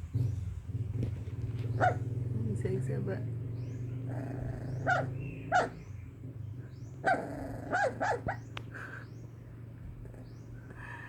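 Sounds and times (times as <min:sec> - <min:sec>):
puppy yipping and barking: 0:01.7 - 0:02.1, 0:04.4 - 0:05.8, 0:07.0 - 0:08.5.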